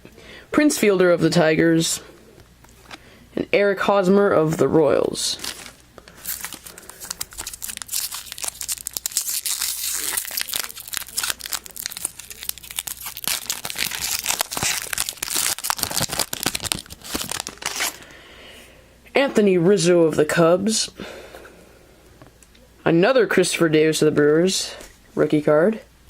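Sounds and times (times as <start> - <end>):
plastic wrapper tearing and crinkling: 5.3 - 18.1.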